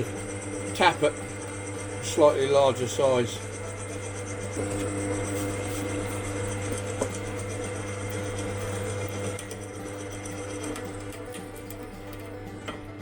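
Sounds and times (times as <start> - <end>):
electric drill motor running: 0.0 - 13.0.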